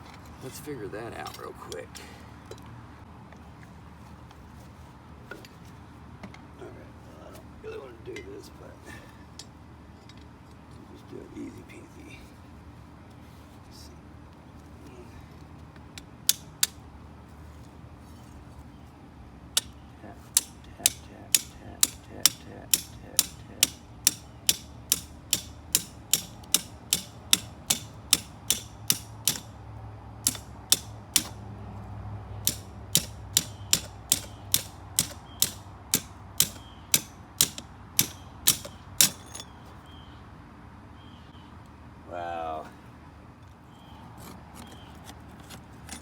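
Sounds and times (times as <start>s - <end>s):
hammer striking steel on anvil: 20.4s - 29.6s, 30.2s - 31.4s, 32.4s - 39.5s.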